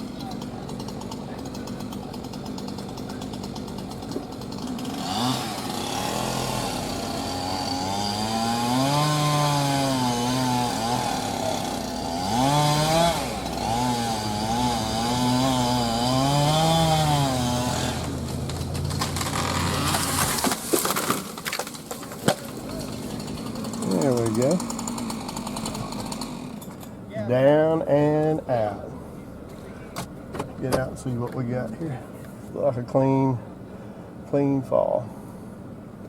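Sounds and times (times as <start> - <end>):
chainsaw cutting wood: 0.0 - 27.0
tree cracking: 15.2 - 26.5.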